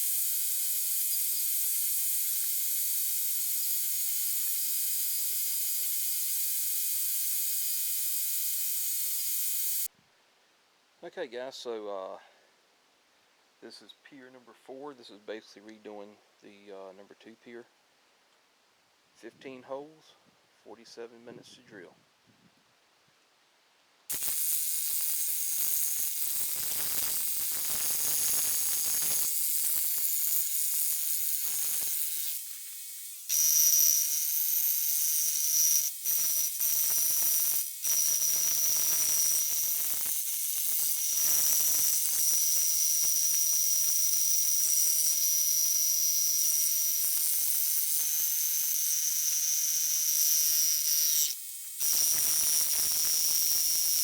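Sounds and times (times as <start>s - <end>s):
power tool high-pitched whine: 0.0s - 9.9s, 24.1s - 54.0s.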